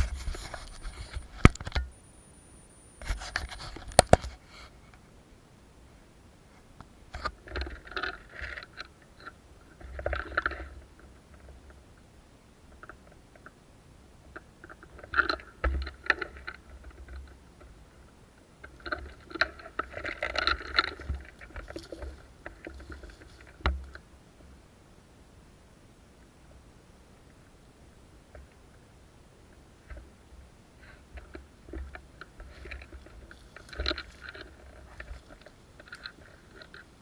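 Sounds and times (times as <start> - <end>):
rustling through forest brush: 0.0 - 4.9.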